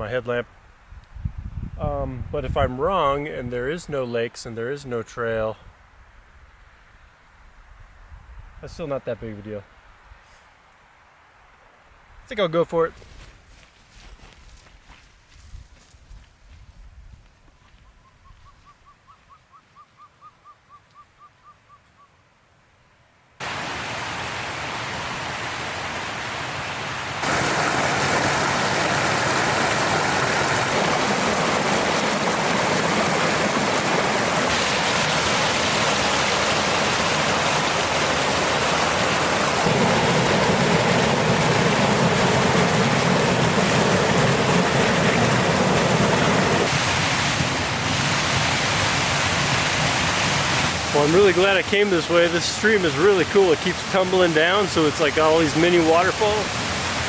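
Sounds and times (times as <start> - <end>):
stream rushing over cascades: 23.4 - 57.0.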